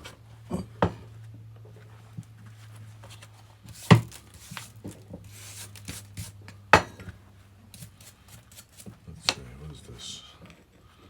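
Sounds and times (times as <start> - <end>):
metal scrape: 3.7 - 6.4, 7.8 - 8.9.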